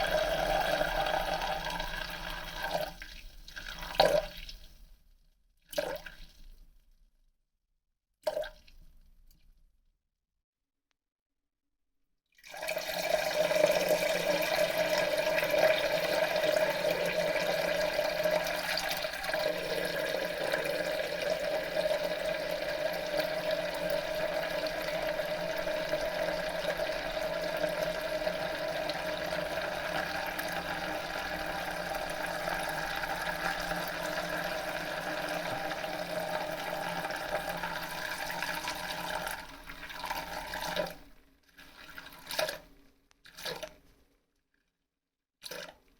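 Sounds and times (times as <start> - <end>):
urine stream splashing into toilet: 0.0 - 3.0, 12.5 - 41.0.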